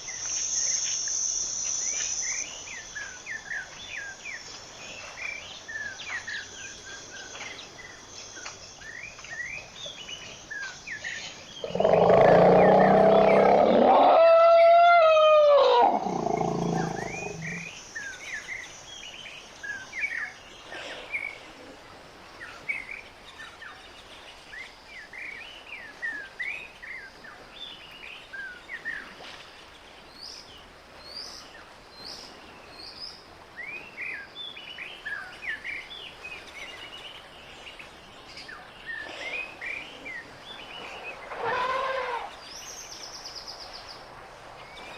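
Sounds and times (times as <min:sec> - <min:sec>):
birds chirping: 0:07.3 - 0:17.8
elephant trumpeting: 0:11.6 - 0:17.6, 0:41.3 - 0:42.3.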